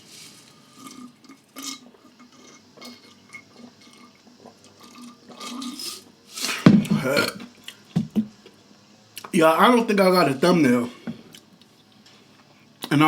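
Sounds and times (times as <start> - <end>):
faint liquid sounds of a drink: 0.6 - 9.3.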